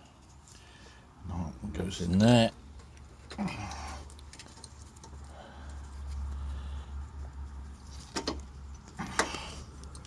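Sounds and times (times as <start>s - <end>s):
low steady rumble: 0.0s - 10.0s
metal parts clicking: 7.9s - 10.0s.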